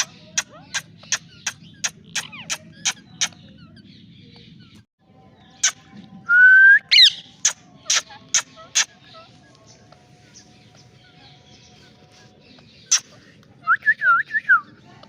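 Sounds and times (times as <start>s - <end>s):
parakeet shrieks: 6.9s - 9.2s.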